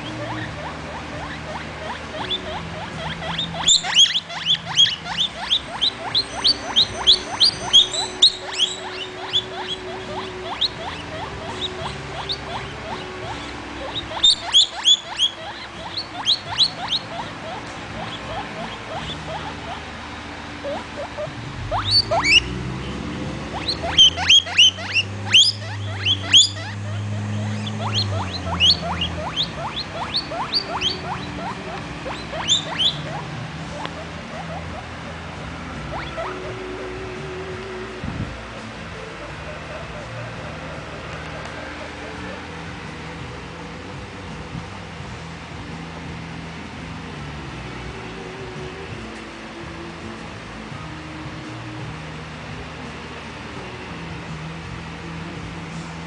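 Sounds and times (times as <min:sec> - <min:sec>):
guinea pig squealing: 0:00.0 - 0:19.9, 0:20.6 - 0:22.9, 0:23.5 - 0:37.2, 0:38.6 - 0:42.8.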